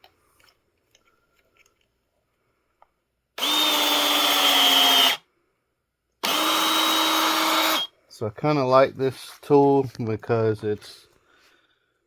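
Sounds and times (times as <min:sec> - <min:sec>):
crimp tool motor whining: 0:03.4 - 0:05.2, 0:06.2 - 0:07.9.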